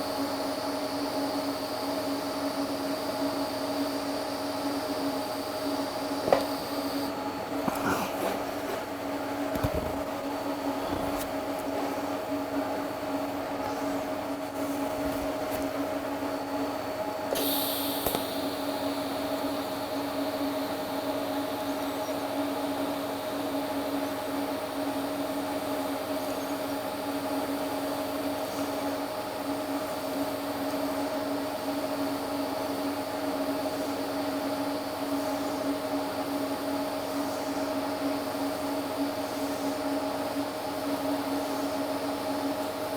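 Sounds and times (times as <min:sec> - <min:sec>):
welding arc hum: 0:01.8 - 0:23.8
welding arc high hiss: 0:17.3 - 0:23.6.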